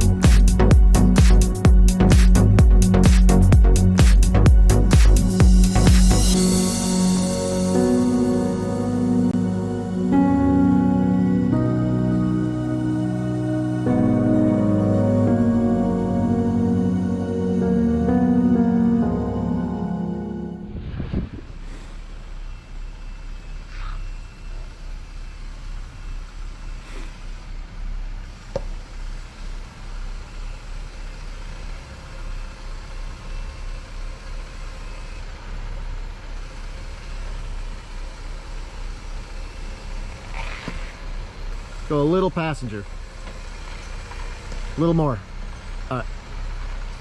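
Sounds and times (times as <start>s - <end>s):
ambient instrumental music: 0.0s - 21.1s
engine low rumble: 0.0s - 47.0s.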